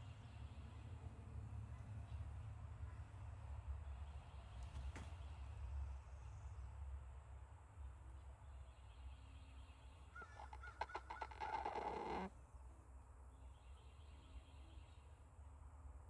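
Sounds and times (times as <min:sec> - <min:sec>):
rooster snoring: 0:10.2 - 0:12.3.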